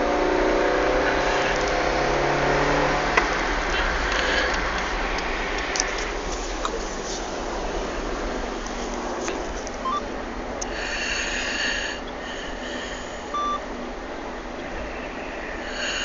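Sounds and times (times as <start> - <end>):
car rumble: 0.0 - 16.0
short beeps: 9.8 - 10.1, 13.3 - 13.6
baby snoring: 15.4 - 16.0.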